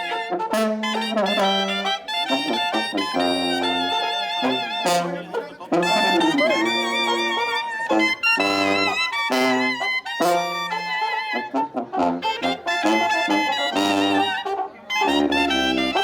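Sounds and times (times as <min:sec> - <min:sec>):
banda brass and reeds playing: 0:00.0 - 0:16.0.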